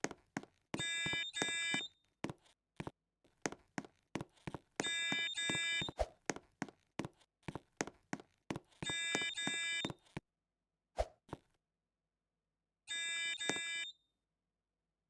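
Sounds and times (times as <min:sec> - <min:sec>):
fire alarm electronic tones: 0:00.8 - 0:01.9, 0:04.8 - 0:06.0, 0:08.8 - 0:09.9, 0:12.9 - 0:14.0.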